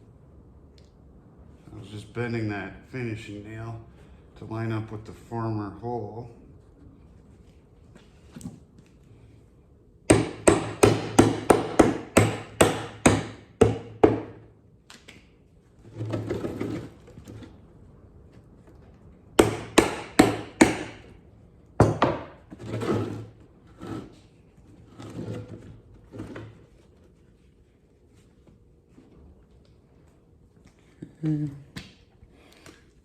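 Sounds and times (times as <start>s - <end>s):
hammer striking nails into wood: 10.1s - 14.4s, 19.4s - 21.1s, 21.8s - 22.4s.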